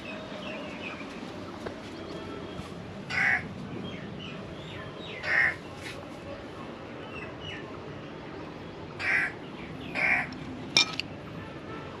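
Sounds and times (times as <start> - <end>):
loud bird calls: 5.1 - 5.6, 9.0 - 10.3
birds chirping: 9.0 - 11.2.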